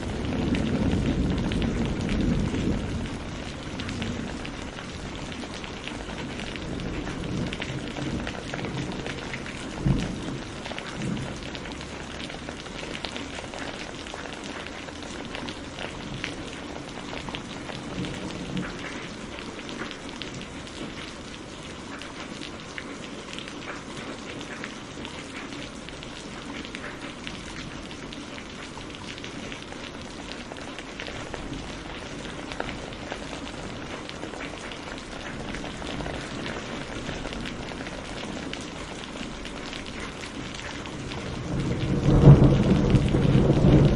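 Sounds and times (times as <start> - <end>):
loud thunderclap: 0.0 - 4.5, 41.0 - 43.9
thunder rumbling: 0.0 - 14.2, 29.2 - 43.9
steady rain falling: 0.0 - 43.9.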